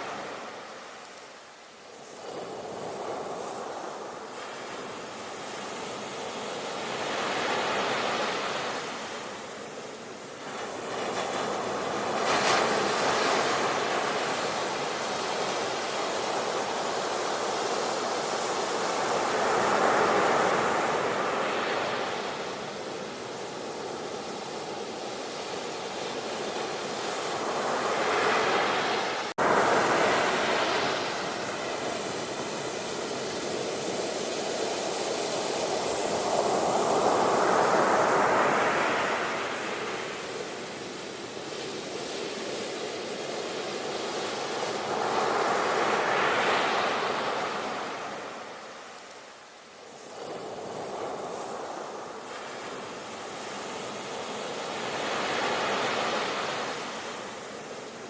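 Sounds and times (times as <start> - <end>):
sea waves breaking on shore: 0.0 - 58.0.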